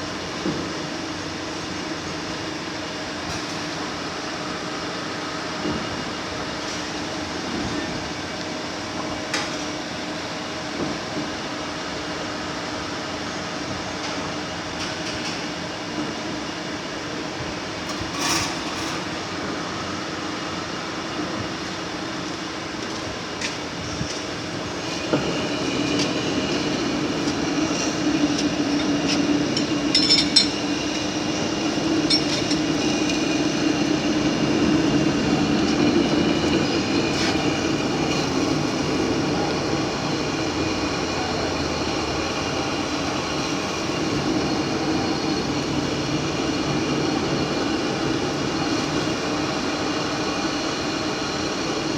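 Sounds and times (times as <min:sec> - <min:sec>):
lathe machine hum: 0:19.0 - 0:51.9
high steady ringing: 0:28.6 - 0:33.8.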